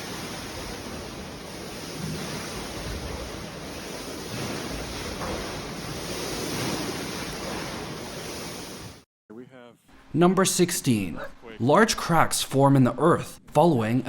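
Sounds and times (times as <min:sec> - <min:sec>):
pool water sloshing and splashing: 0:00.0 - 0:09.0.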